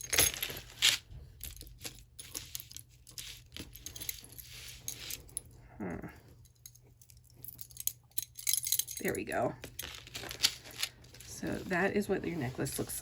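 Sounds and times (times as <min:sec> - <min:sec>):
metal chain clinking: 0:00.0 - 0:05.6, 0:06.3 - 0:11.6.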